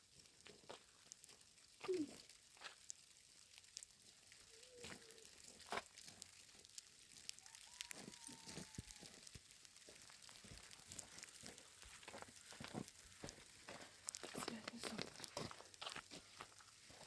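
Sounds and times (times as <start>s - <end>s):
wood fire crackling and popping: 0.0s - 17.0s.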